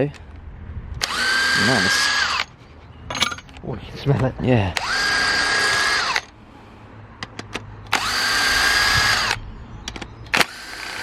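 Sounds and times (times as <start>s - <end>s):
electric power driver whining: 1.0s - 2.5s, 4.8s - 6.3s, 7.9s - 9.4s, 10.3s - 11.0s.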